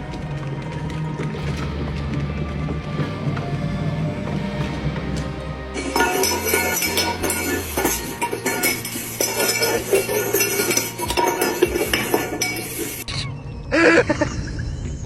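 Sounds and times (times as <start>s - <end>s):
tableware clinking and rattling: 5.8s - 13.0s.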